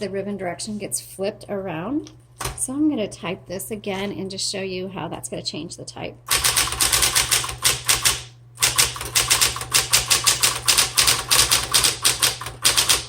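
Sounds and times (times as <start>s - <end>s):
typewriter key strikes: 6.3s - 13.0s
typewriter motor hum: 6.3s - 13.0s.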